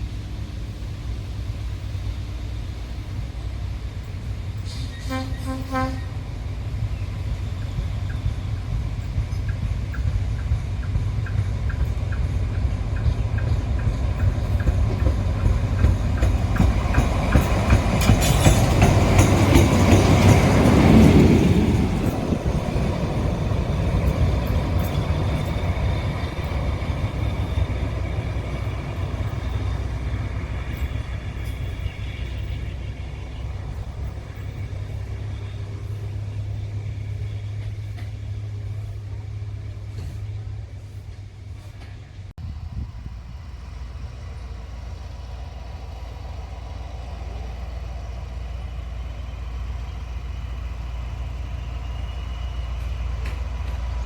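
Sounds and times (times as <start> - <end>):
low locomotive engine rumble: 0.0 - 54.0
wheels clicking over rail joints: 7.6 - 32.8.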